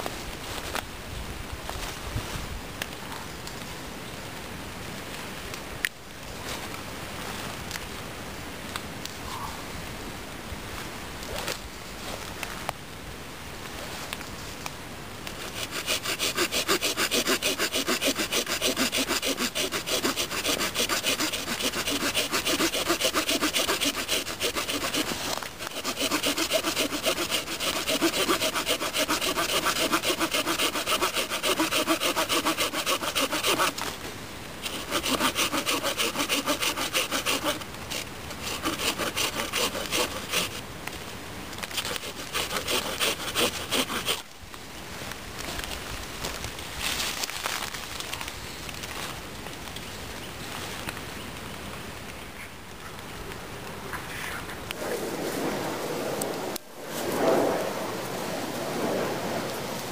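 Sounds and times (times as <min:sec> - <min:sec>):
small saw cutting through wood: 0:15.4 - 0:33.9, 0:34.6 - 0:40.6, 0:41.6 - 0:44.3.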